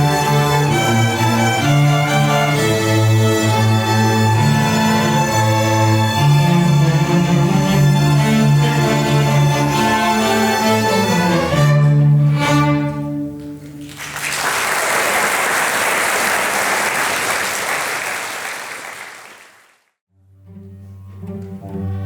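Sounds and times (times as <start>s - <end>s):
cellos and basses low notes: 0.0s - 13.8s, 20.2s - 22.0s
string orchestra playing: 0.0s - 13.8s, 20.2s - 22.0s
applause: 13.7s - 20.0s.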